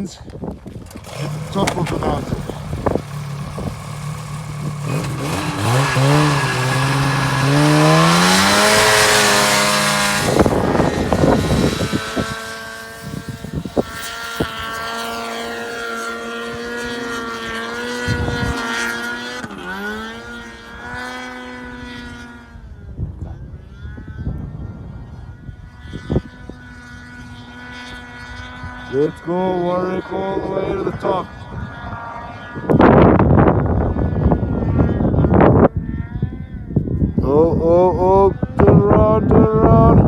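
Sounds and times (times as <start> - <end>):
snowmobile engine revving: 0.0 - 40.0.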